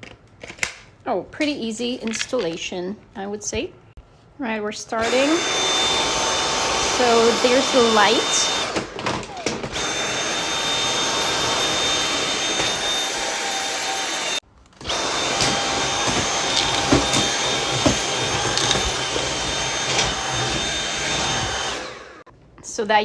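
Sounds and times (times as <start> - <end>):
vacuum cleaner whirring: 4.9 - 22.3.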